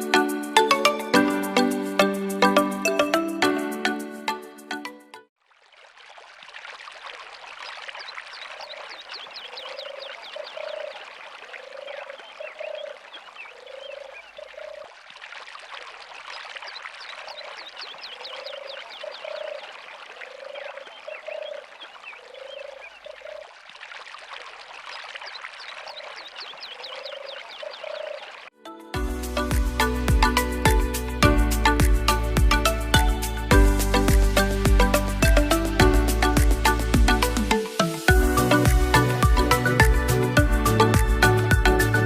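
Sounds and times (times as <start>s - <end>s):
frogs croaking low: 7.0s - 28.5s.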